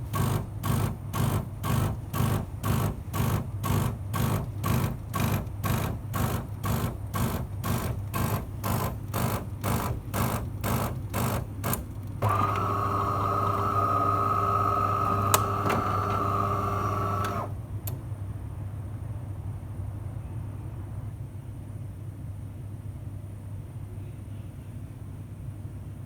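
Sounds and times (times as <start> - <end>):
coffee machine pulsing: 0.0 - 17.6
coffee machine whine: 0.0 - 17.7.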